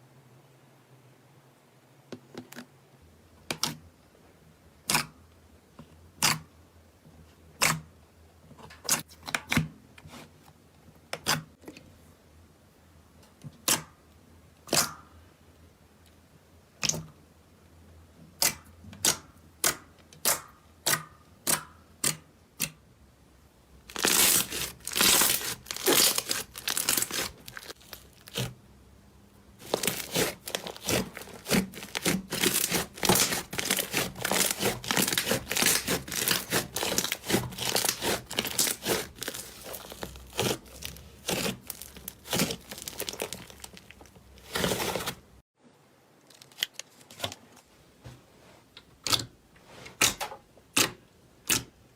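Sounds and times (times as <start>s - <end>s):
slime crackling and crunching: 23.9s - 28.5s, 29.6s - 45.2s
slime popping: 23.9s - 28.5s, 29.6s - 45.1s.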